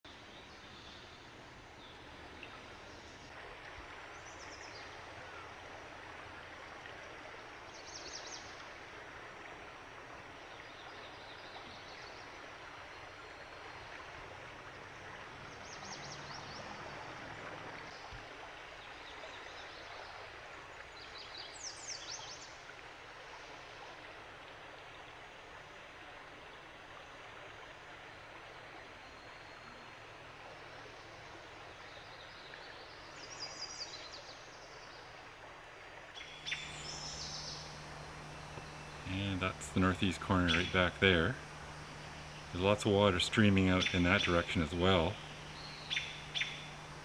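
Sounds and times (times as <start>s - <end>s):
songbird singing: 0.1s - 3.4s, 4.0s - 5.6s, 7.6s - 8.7s, 10.3s - 18.2s, 18.8s - 22.6s, 28.8s - 35.1s, 36.1s - 47.0s
rushing floodwater: 8.5s - 21.0s.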